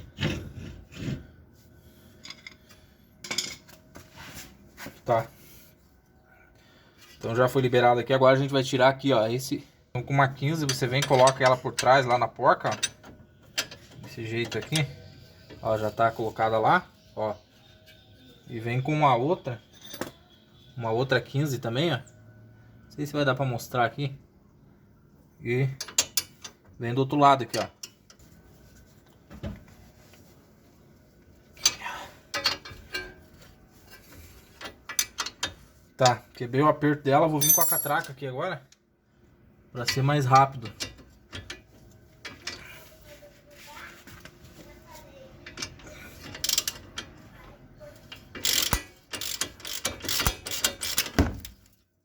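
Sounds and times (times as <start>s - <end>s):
wrenches clinking on metal: 10.4s - 14.9s, 37.3s - 38.3s, 45.5s - 47.2s, 48.0s - 51.7s
ratchet wrench clicking: 46.3s - 46.9s, 48.2s - 51.2s.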